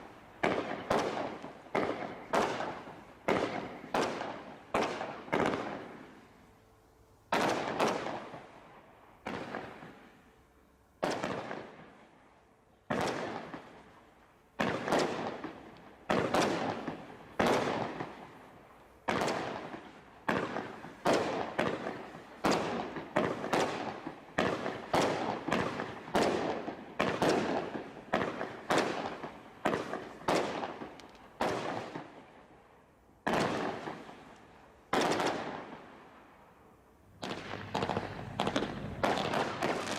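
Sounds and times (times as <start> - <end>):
firework shots banging: 19.1 - 32.1, 33.2 - 35.9, 37.2 - 39.9.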